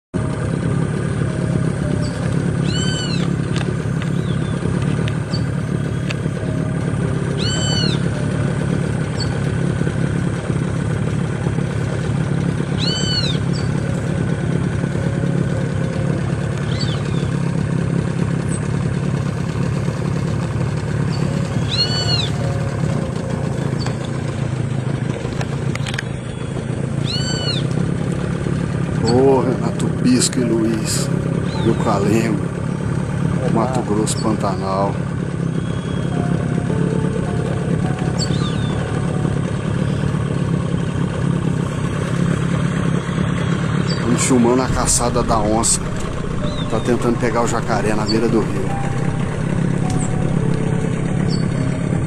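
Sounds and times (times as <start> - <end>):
engine humming at idle: 0.0 - 52.0
bird call: 1.1 - 9.5, 12.6 - 17.5, 20.9 - 24.4, 25.8 - 27.8, 28.4 - 32.8, 34.0 - 40.4, 43.4 - 52.0.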